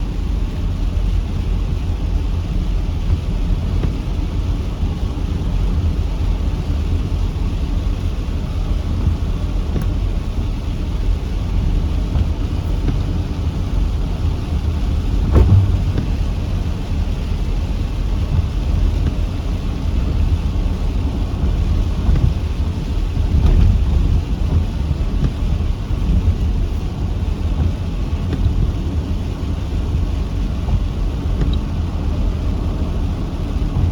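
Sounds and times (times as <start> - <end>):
deep constant rumble: 0.0 - 33.9
heavy rain pouring: 0.1 - 33.9
short thump: 15.2 - 16.6.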